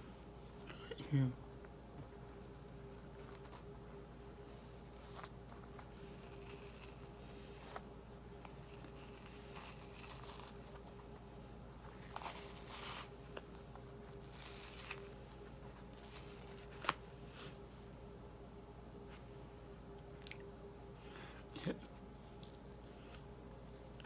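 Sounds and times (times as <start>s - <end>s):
plastic toy rustling and scraping: 4.3s - 10.9s, 11.9s - 13.2s.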